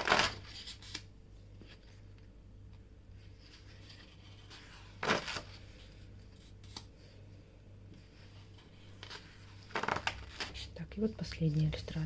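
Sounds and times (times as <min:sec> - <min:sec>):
paper rustle: 0:03.2 - 0:06.9, 0:08.2 - 0:10.7.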